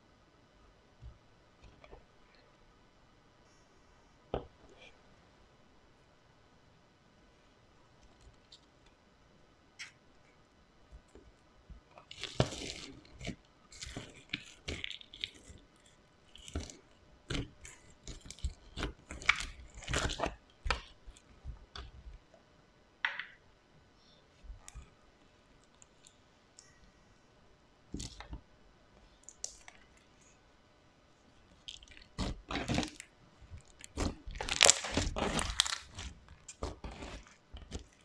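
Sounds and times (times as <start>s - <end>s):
hands squishing crunchy slime: 12.0s - 21.9s, 31.6s - 38.0s.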